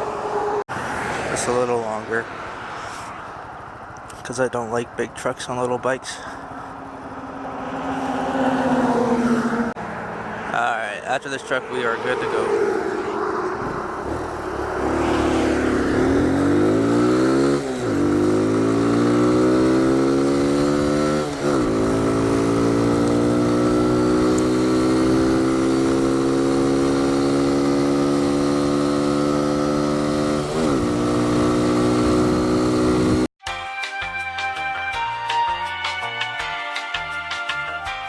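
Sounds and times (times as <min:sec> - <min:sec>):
motorcycle engine accelerating: 0:06.6 - 0:33.3.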